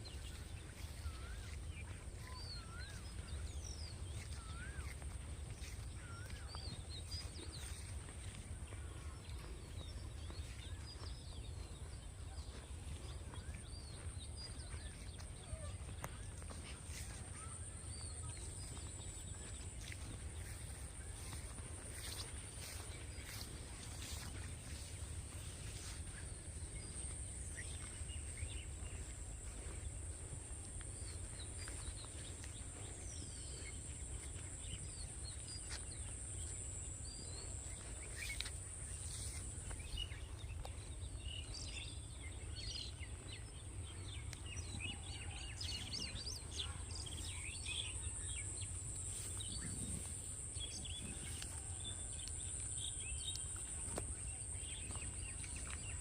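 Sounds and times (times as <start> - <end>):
wind rumble on microphone: 48.0 - 53.9.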